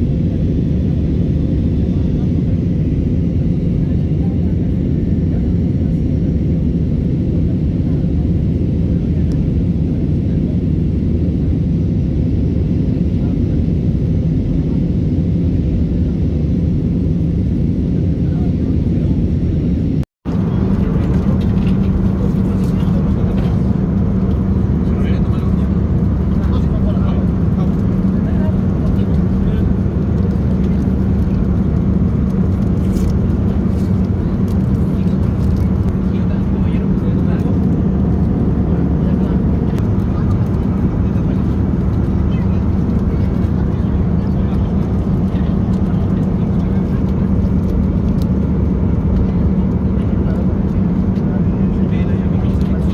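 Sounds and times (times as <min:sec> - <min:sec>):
airliner cabin engine rumble: 0:00.0 - 0:52.9.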